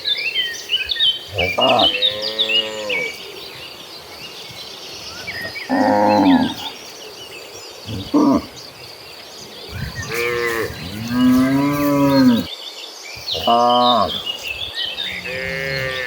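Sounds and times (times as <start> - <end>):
cattle mooing: 1.3 - 3.2, 5.4 - 6.7, 9.8 - 12.5, 15.0 - 16.0.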